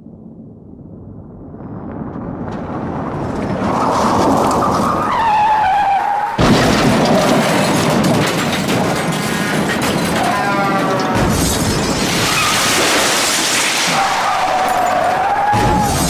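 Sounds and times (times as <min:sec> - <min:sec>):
tyres screeching: 0:09.2 - 0:12.8.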